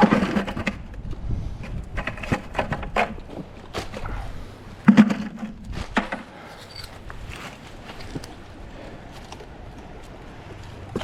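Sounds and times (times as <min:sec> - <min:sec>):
scrap metal clicks and knocks: 0:01.6 - 0:04.1.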